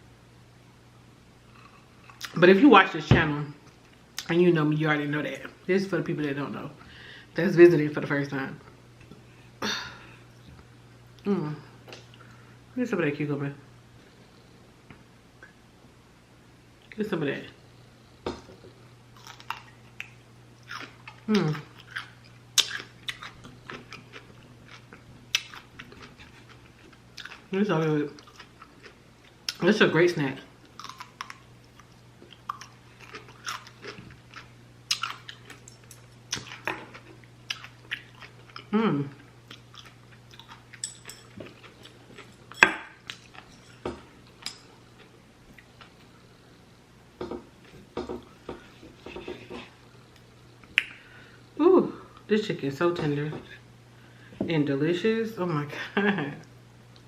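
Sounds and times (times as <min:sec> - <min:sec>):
low steady hum: 0:00.0 - 0:57.0
person humming mm: 0:11.2 - 0:11.7
chewing crunchy cucumber: 0:19.2 - 0:29.6, 0:30.6 - 0:43.6.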